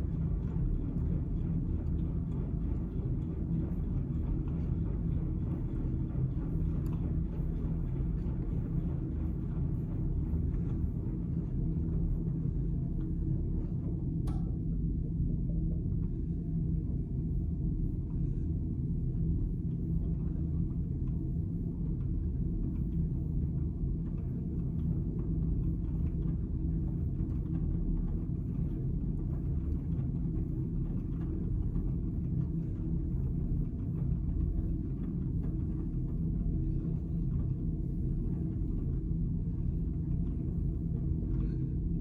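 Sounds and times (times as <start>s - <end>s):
washing machine drum rumbling: 14.1s - 14.9s.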